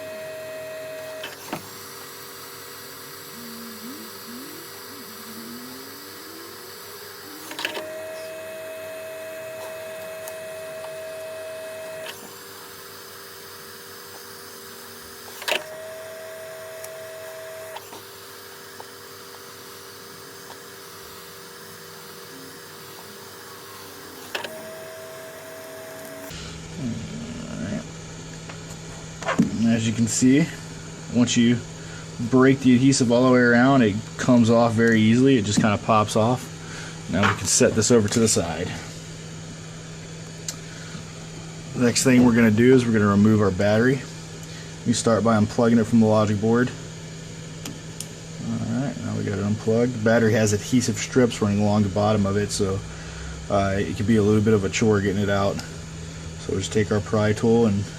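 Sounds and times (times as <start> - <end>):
high tone switching on and off: 0.0 - 26.9
small motor hum and whine: 0.0 - 57.9.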